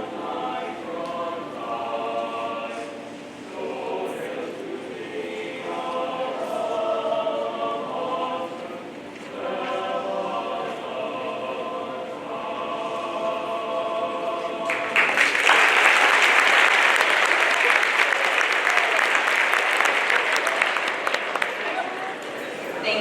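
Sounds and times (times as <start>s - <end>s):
choir singing in harmony: 0.0s - 23.0s
loud applause: 14.6s - 22.6s.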